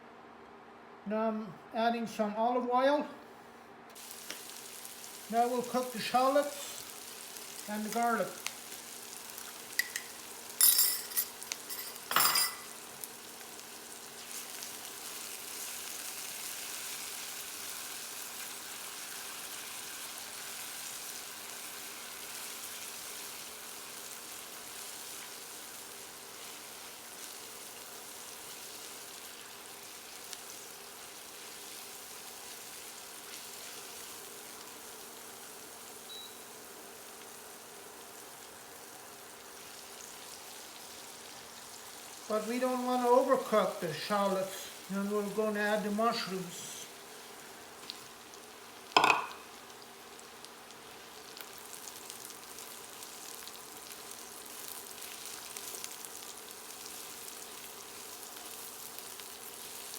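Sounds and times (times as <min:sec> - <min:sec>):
shallots sizzling in oil: 0:03.9 - 0:59.9
utensil clattering against pan: 0:09.8 - 0:12.7, 0:49.0 - 0:49.4.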